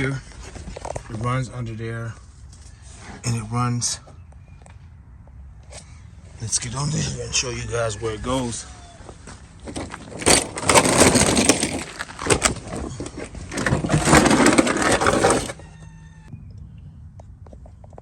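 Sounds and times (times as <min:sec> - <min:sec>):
crunching and scraping under car: 0:00.0 - 0:04.8, 0:08.1 - 0:16.1.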